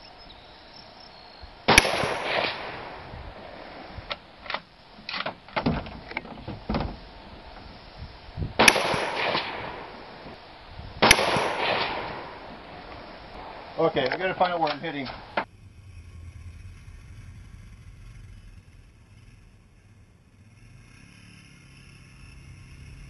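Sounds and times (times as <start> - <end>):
rifle shots with echo: 1.7 - 4.0, 8.6 - 10.4, 11.0 - 15.4
small clicks and knocks: 4.0 - 7.7.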